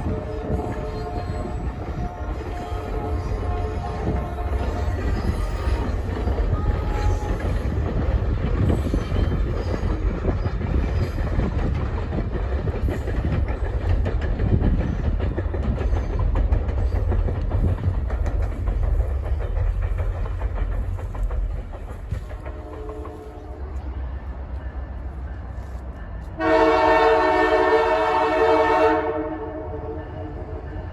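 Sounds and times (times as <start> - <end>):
train rumbling past: 0.0 - 30.9
wheels clicking over rails: 1.4 - 23.3.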